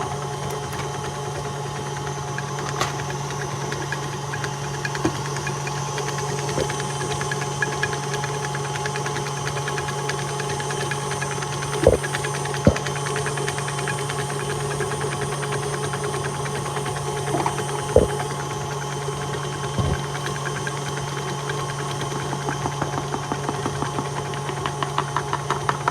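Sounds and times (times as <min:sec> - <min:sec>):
electric mixer running: 0:00.0 - 0:23.2
rhythmic clatter: 0:06.3 - 0:20.6
sharp knocks: 0:12.7 - 0:12.9.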